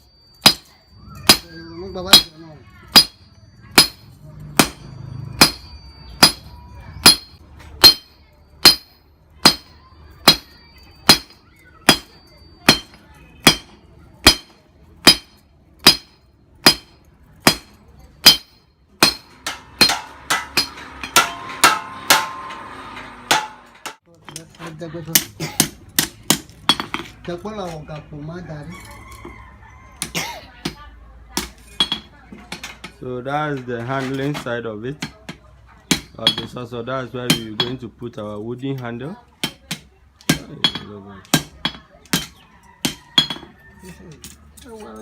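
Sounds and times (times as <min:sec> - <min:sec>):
hammer striking steel on anvil: 0:00.0 - 0:24.5, 0:25.1 - 0:27.1, 0:31.4 - 0:33.0, 0:35.0 - 0:36.6, 0:37.3 - 0:37.8, 0:39.4 - 0:43.6.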